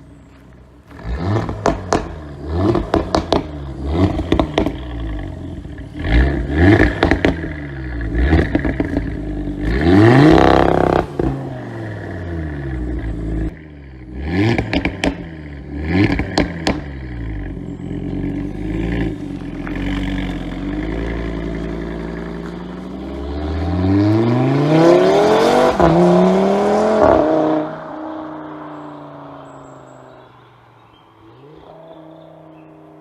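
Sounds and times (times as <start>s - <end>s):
car engine revving: 0.0s - 33.0s
exhaust pops and crackles: 0.3s - 9.7s, 14.3s - 23.2s.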